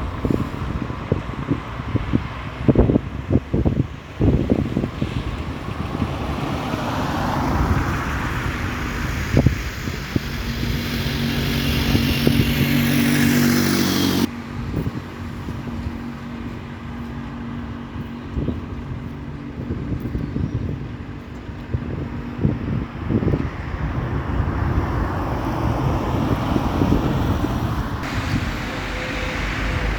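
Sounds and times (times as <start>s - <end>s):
outdoor noise: 0.0s - 29.9s
vehicle driving past: 5.5s - 14.6s, 24.4s - 29.9s.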